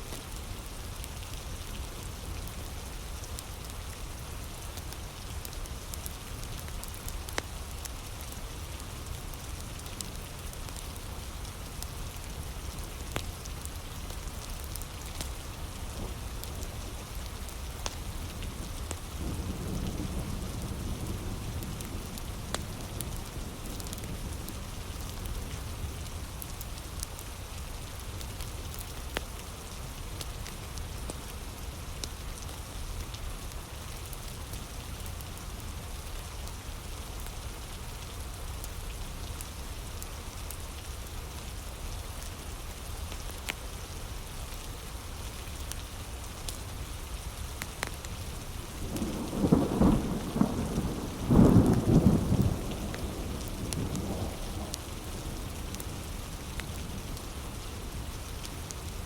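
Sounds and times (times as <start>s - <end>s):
heavy rain: 0.0s - 59.0s
wood fire crackling: 0.1s - 19.2s, 21.8s - 37.4s, 41.7s - 59.0s
thunder rumbling: 48.8s - 58.1s.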